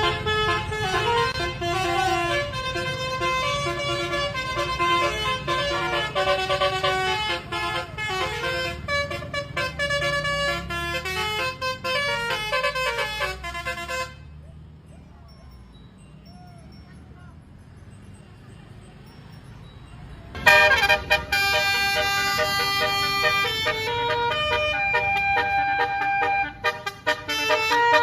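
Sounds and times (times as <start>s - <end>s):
multi-tone air horn tune: 0.0s - 14.2s, 20.4s - 28.0s.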